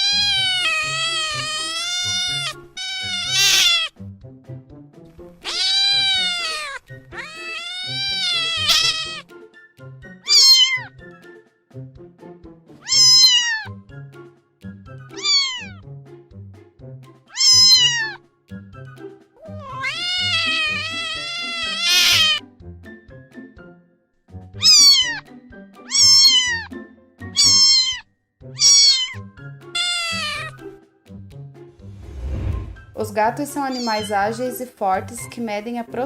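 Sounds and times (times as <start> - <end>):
cat meowing: 0.0 - 4.0, 5.4 - 9.3, 10.2 - 10.9, 12.8 - 13.8, 15.1 - 15.8, 17.3 - 18.2, 19.4 - 22.4, 24.6 - 30.6, 33.6 - 34.2.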